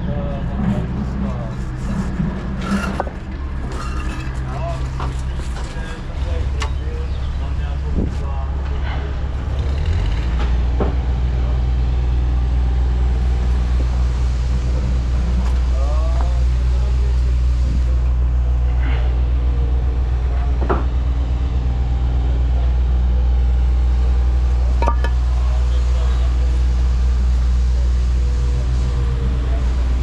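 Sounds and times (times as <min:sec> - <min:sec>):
vehicle engine rumbling: 0:00.0 - 0:30.0.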